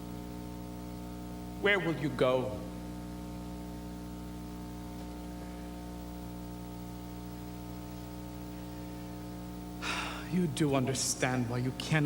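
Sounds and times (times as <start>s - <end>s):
steady hum of held tones: 0.0s - 12.0s
faint hiss: 7.4s - 12.0s.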